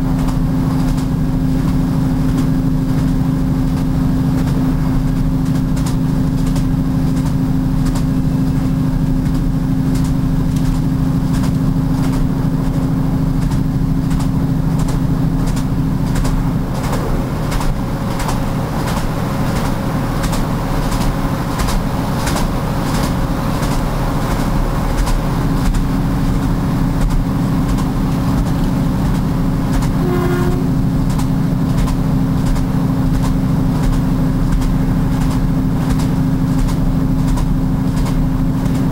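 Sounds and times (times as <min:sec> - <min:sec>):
train rumbling on track: 0:00.0 - 0:38.9
wheels clicking over rail joints: 0:00.0 - 0:38.9
brief pitched tone: 0:30.0 - 0:30.9.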